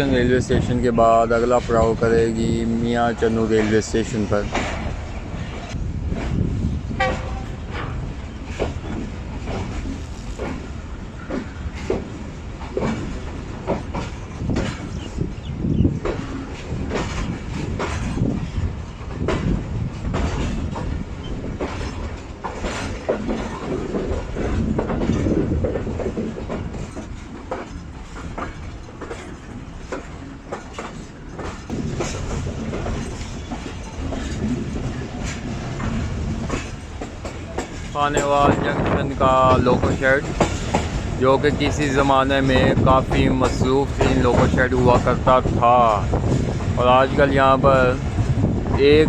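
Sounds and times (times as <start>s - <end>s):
train wheels clattering over joints: 0.0s - 49.0s
steady low rumble: 31.6s - 48.8s.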